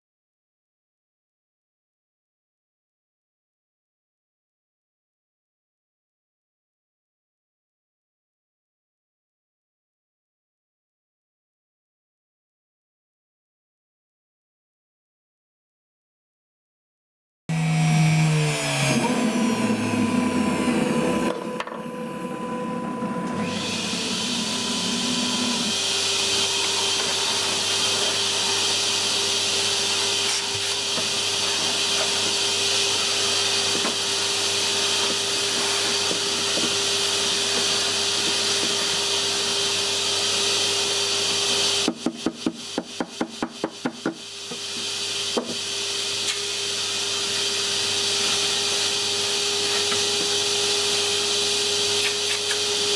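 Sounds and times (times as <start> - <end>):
router spindle milling: 23.3 - 37.8.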